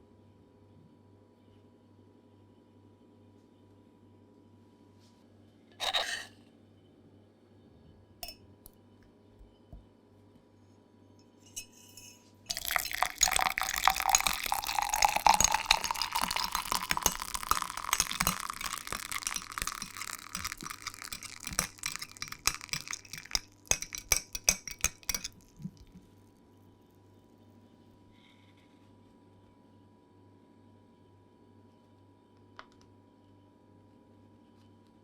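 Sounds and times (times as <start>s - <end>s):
spoon clinking against glass: 8.2s - 8.4s, 11.4s - 26.0s
liquid sloshing in a glass: 12.5s - 26.1s.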